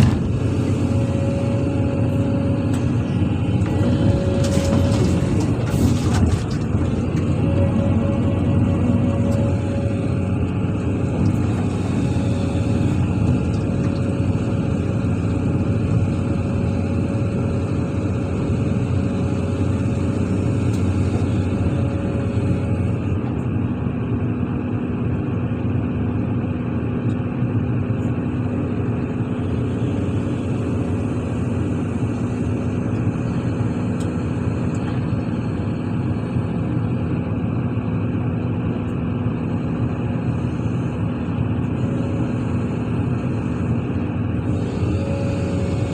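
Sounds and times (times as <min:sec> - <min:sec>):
excavator diesel engine running: 0:00.0 - 0:45.9.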